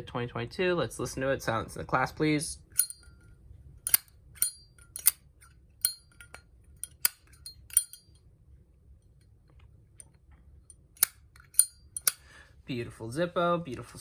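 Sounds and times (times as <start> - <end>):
lighter lid metallic clicks: 11.0 - 12.2.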